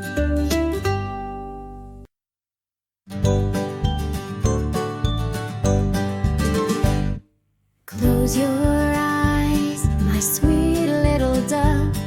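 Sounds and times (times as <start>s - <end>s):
plucked string lullaby: 0.0s - 2.0s.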